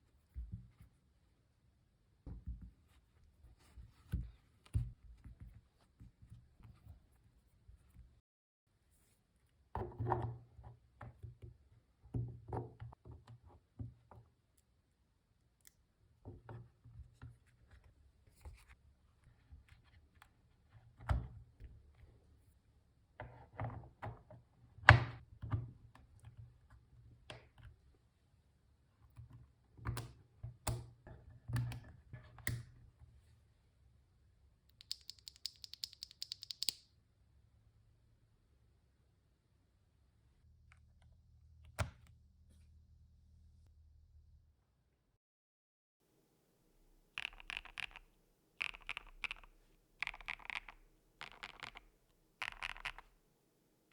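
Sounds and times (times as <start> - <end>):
sharp high keyboard clicks: 34.7 - 36.8, 47.2 - 53.1.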